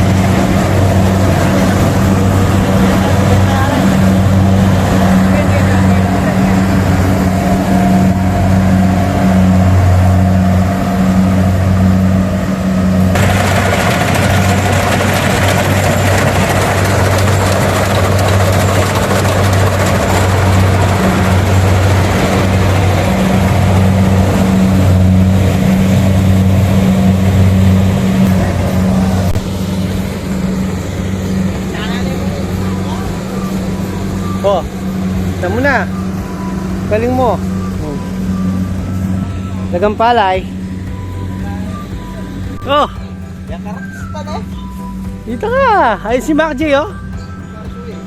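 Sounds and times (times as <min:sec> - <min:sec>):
loud rushing noise: 0:00.0 - 0:43.4
harvester engine humming: 0:00.0 - 0:48.0.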